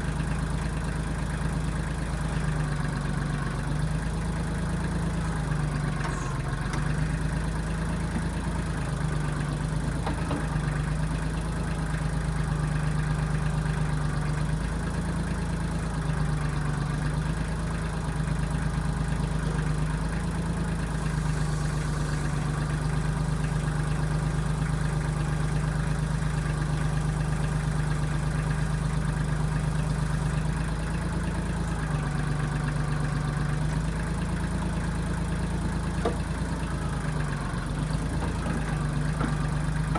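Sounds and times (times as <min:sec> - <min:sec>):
backhoe diesel engine running: 0:00.0 - 0:39.9.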